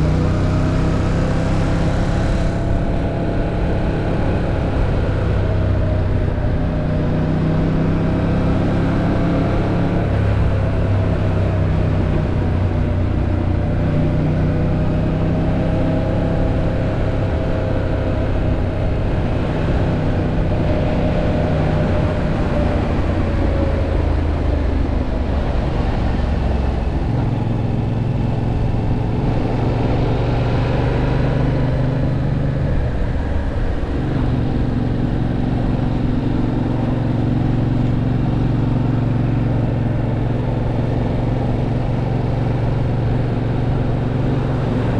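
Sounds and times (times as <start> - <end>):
motorcycle engine running: 0.0 - 44.9
wind and road noise: 0.0 - 44.9.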